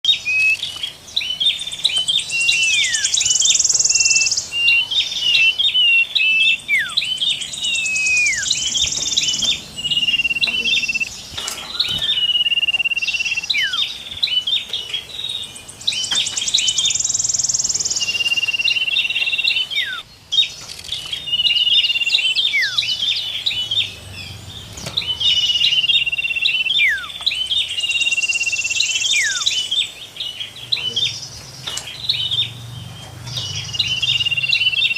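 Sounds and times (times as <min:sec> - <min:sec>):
songbirds chirping and whistling: 0:00.0 - 0:34.9
high buzzy bird trill: 0:00.1 - 0:34.9.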